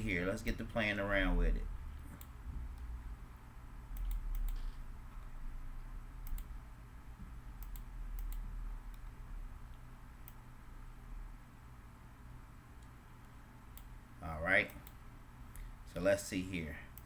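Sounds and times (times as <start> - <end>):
steady low hum: 0.0 - 17.0
computer mouse and keyboard clicks: 4.0 - 5.3, 6.2 - 6.5, 7.6 - 10.4.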